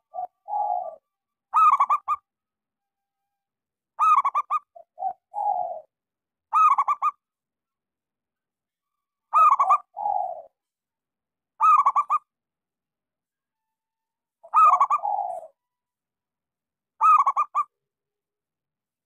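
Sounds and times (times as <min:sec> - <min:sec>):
dove cooing: 0:00.0 - 0:01.0, 0:01.6 - 0:02.3, 0:04.0 - 0:05.9, 0:09.3 - 0:10.6, 0:11.6 - 0:12.2, 0:14.4 - 0:15.6, 0:17.0 - 0:17.7
lower rolling coo: 0:00.0 - 0:01.0, 0:14.5 - 0:15.6.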